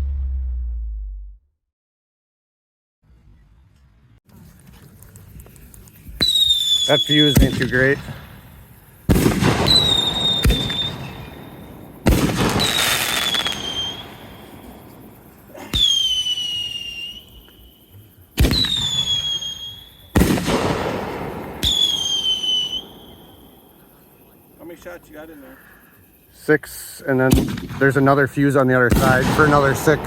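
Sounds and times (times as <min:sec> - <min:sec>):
firework hiss: 0:04.6 - 0:25.6
firework whistle: 0:06.1 - 0:24.8
firework bangs: 0:06.2 - 0:24.0, 0:27.3 - 0:30.0.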